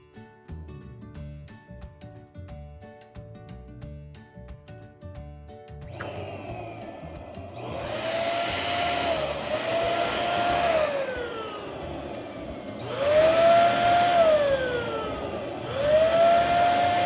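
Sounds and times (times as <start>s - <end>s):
music: 0.0s - 17.0s
electric balloon pump blowing air: 5.8s - 17.0s.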